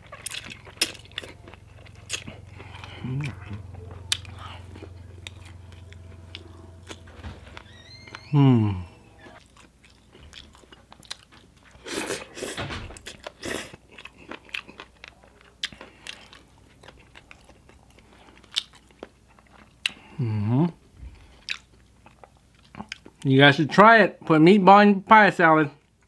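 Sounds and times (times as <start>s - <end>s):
chewing and crunching food: 0.0s - 7.1s, 9.3s - 24.3s, 25.7s - 26.0s
short pitched cry: 5.6s - 9.4s.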